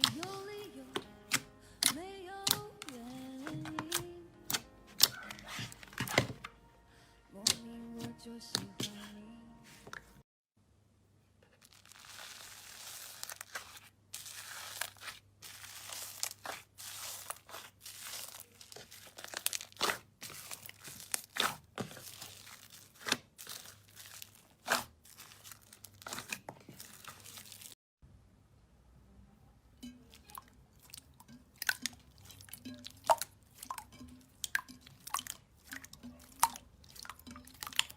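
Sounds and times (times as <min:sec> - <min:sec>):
slime squeezed crackling and popping: 0:01.3 - 0:02.6, 0:11.6 - 0:27.8.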